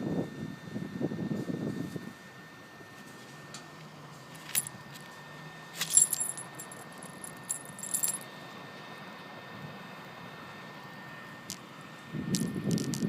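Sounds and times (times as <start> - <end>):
faint steady hum: 0.0 - 13.0
metallic clinking and jangling: 4.4 - 4.7, 5.8 - 8.2.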